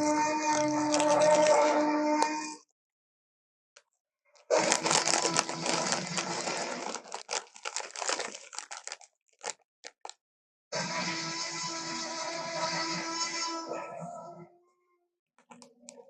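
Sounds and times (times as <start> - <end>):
raspy dinosaur roar: 0.0 - 2.6.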